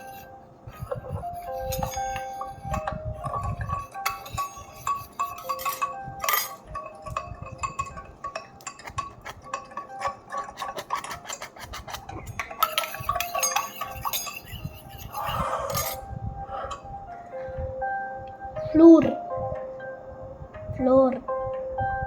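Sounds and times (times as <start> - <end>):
utensil clinking against bowl: 0.0 - 16.0.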